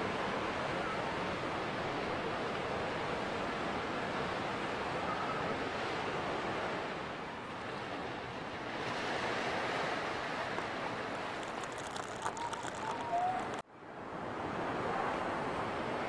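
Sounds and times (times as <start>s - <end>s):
waves washing on shore: 0.0s - 16.0s
short calls: 11.7s - 13.6s.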